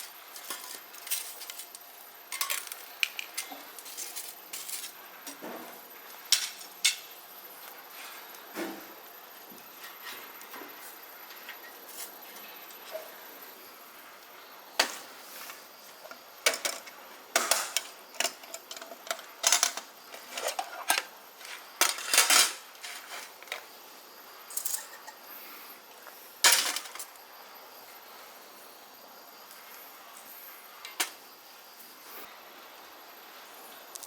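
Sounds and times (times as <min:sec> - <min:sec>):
steel plates clinking: 0:16.5 - 0:23.3.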